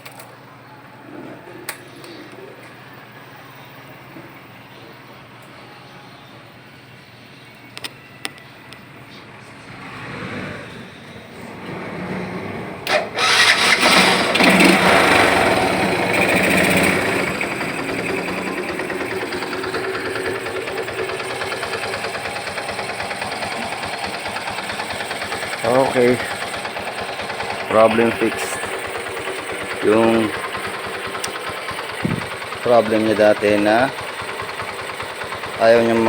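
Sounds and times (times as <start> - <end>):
motorcycle engine starting and idling: 9.5 - 36.0.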